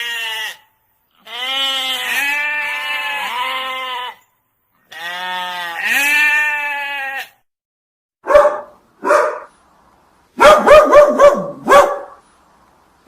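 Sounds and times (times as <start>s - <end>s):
farm animal bleating: 0.0s - 7.4s.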